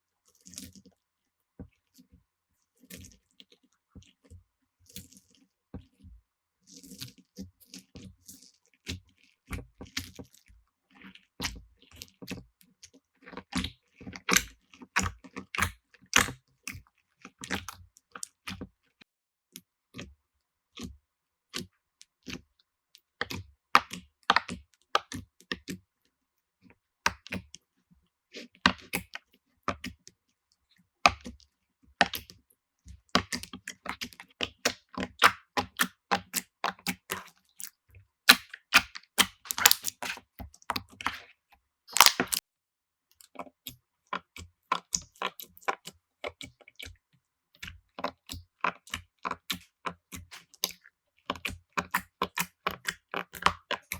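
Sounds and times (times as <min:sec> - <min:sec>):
slime squeezed sticky pops: 0:38.3 - 0:40.2, 0:41.9 - 0:42.4.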